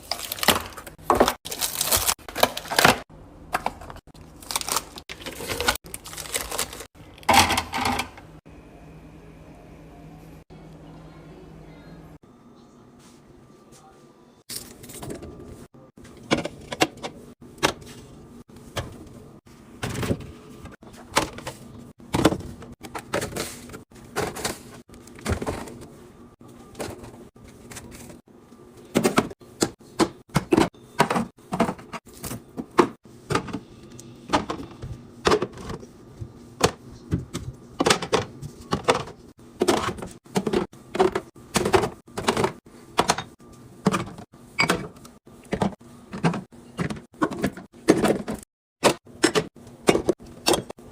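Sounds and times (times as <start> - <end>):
containers clattering: 0.0 - 8.3.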